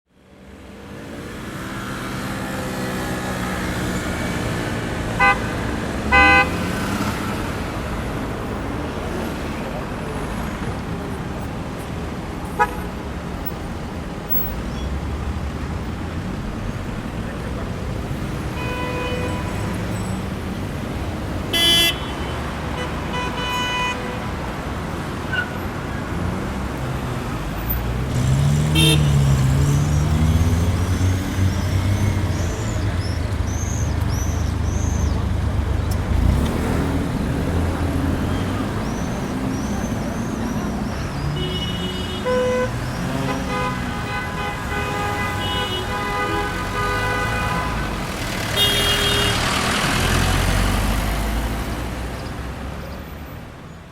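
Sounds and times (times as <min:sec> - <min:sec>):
road traffic noise: 0:00.1 - 0:53.9
car horns honking: 0:05.0 - 0:07.2, 0:12.5 - 0:13.0, 0:18.4 - 0:20.2, 0:21.4 - 0:24.6, 0:28.1 - 0:34.2, 0:41.0 - 0:50.7.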